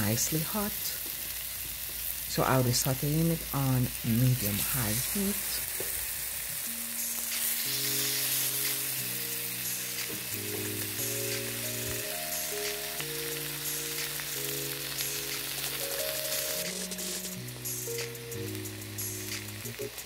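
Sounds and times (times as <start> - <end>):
chicken sizzling in hot oil: 0.0 - 20.0
soft background music chords: 3.0 - 20.0.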